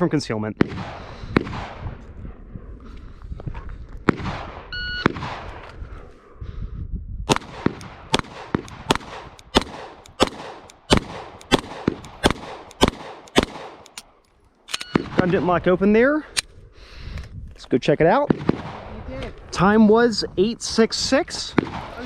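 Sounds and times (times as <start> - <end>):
rapid pistol shots: 4.1 - 5.6, 7.3 - 14.1, 18.3 - 18.9
shot timer beep: 4.8 - 5.1.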